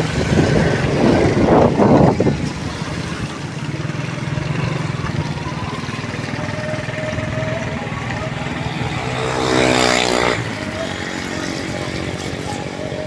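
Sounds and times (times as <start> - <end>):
vehicle passing by: 0.0 - 13.0
small engine running: 8.0 - 13.0.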